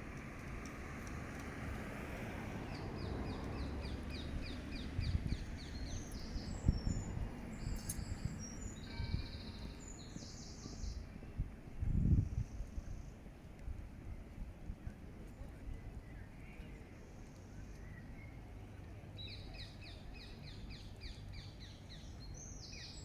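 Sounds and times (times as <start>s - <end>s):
songbird singing: 2.4s - 11.3s, 16.0s - 23.0s.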